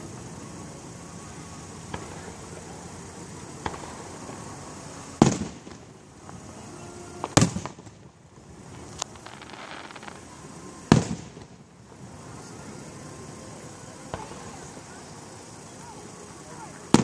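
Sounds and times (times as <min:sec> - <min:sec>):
firework crack: 0:00.0 - 0:17.0
firework booms: 0:01.8 - 0:06.5, 0:07.2 - 0:12.3, 0:14.1 - 0:14.8.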